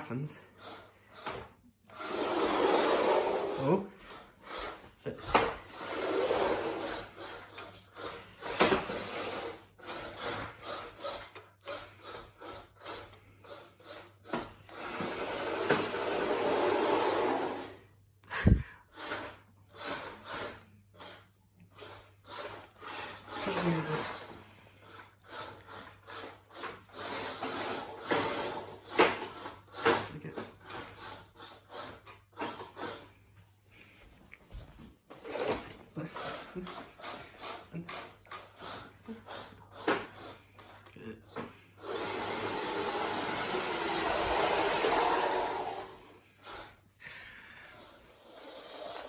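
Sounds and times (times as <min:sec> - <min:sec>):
grinding: 0:01.9 - 0:13.4, 0:41.9 - 0:46.8.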